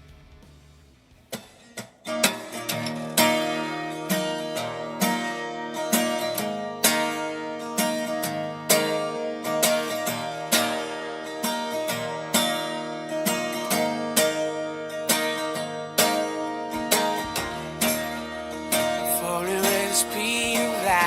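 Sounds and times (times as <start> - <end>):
acoustic guitar picking and strumming: 0.0 - 21.0.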